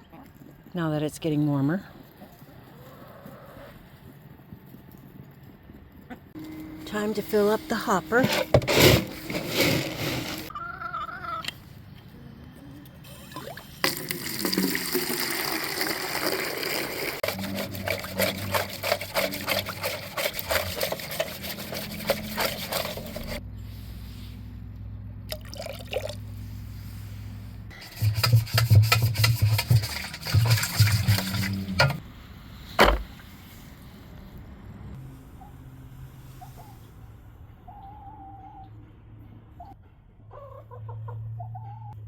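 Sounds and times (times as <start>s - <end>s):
feed pouring into hopper: 8.1s - 10.5s, 13.8s - 23.4s.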